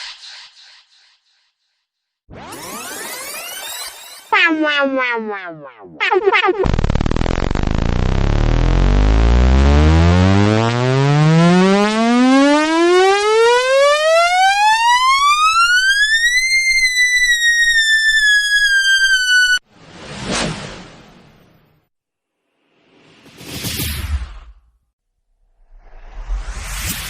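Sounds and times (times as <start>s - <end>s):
falling electronic swoop: 2.3s - 14.4s, 25.6s - 27.0s
electronic tone sweeping upward: 2.3s - 19.6s.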